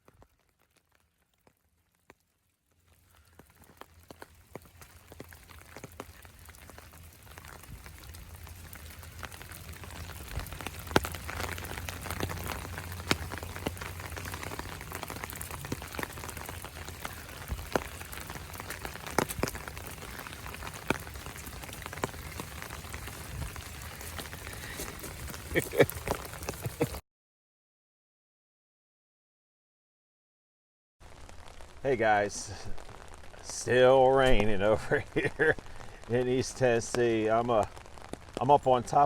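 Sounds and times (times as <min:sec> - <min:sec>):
steady rain falling: 0:00.0 - 0:27.0, 0:31.0 - 0:39.0
water drips landing close: 0:00.0 - 0:27.0.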